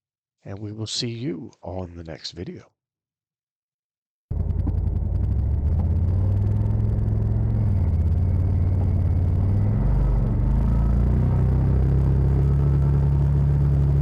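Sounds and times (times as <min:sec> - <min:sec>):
utility vehicle engine running: 0:04.3 - 0:14.0.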